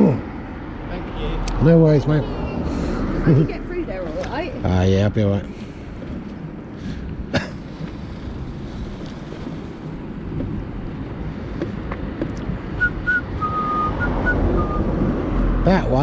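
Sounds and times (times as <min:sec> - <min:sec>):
mobility scooter rumbling: 0:06.0 - 0:14.7
wind on microphone: 0:07.9 - 0:15.6
high whistled notes: 0:12.8 - 0:15.0.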